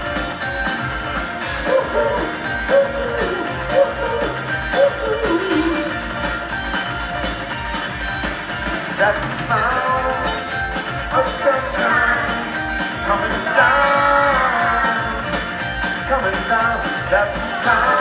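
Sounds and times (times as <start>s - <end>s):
live band playing upbeat song: 0.0s - 18.0s
person singing: 1.4s - 6.5s, 8.8s - 18.0s.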